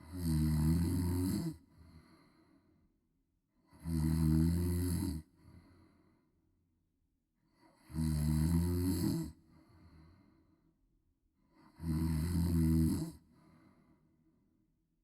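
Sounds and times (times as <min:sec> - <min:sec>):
woman snoring: 0:00.0 - 0:01.6, 0:03.7 - 0:05.3, 0:07.7 - 0:09.4, 0:11.6 - 0:13.2.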